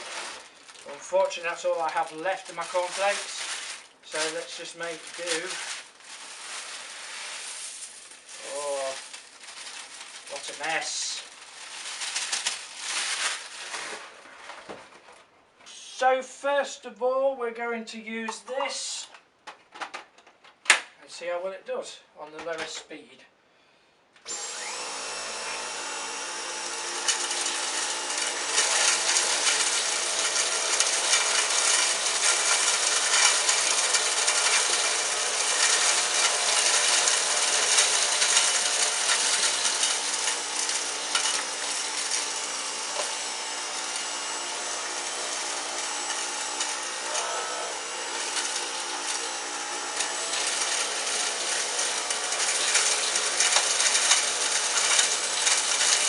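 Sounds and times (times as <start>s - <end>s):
cornflakes rattling into vacuum: 0.0s - 14.1s, 25.3s - 56.0s
vacuum cleaner motor whine: 24.2s - 56.0s.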